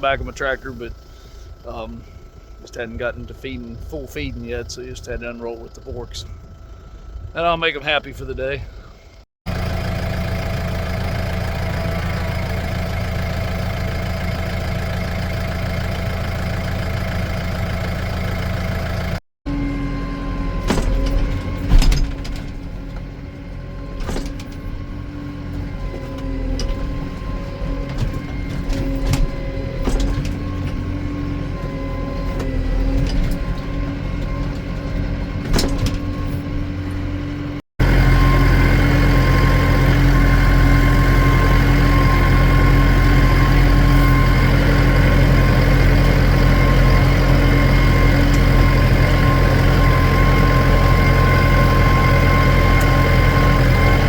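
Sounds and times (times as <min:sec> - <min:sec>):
tractor engine running: 0:00.0 - 0:54.0
knocks and clanks: 0:20.5 - 0:23.1, 0:23.8 - 0:31.2, 0:32.3 - 0:37.1.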